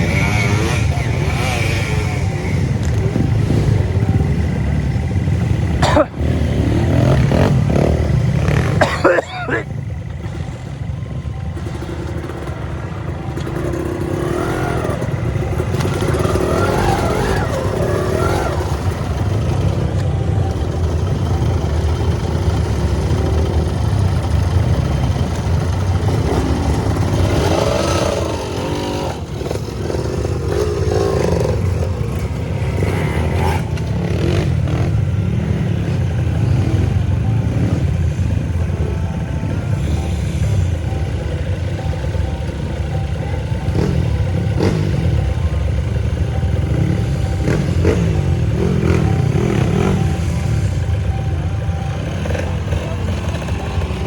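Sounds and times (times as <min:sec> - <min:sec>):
motorcycle engine revving: 0:00.0 - 0:54.0.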